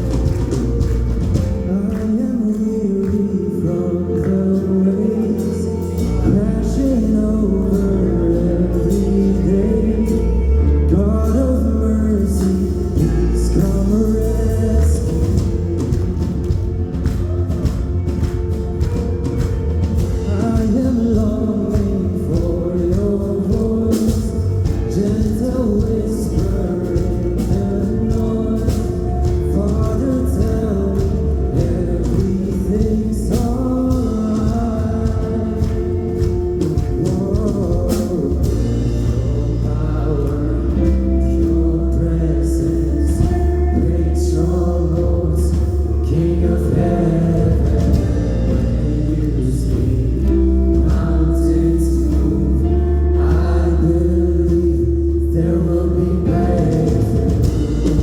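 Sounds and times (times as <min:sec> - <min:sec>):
person singing: 0:00.0 - 0:58.0
worship band playing: 0:00.0 - 0:58.0.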